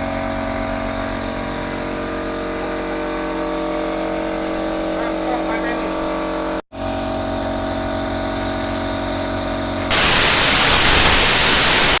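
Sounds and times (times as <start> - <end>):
machine humming: 0.0 - 12.0
plasma torch hissing: 9.9 - 12.0.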